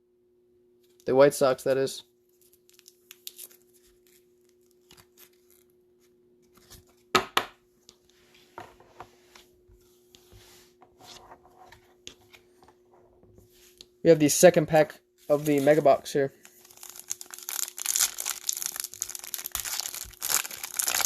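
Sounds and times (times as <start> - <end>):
faint steady hum: 0.0 - 21.0
wrapper crinkling and tearing: 2.4 - 5.7, 16.4 - 21.0.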